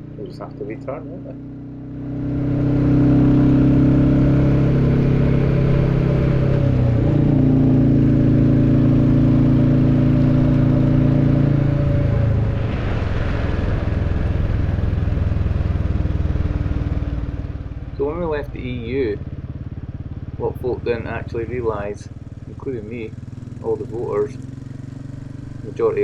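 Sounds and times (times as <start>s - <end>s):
motorcycle engine cruising: 0.0s - 26.0s
broad rushing noise: 12.2s - 17.0s.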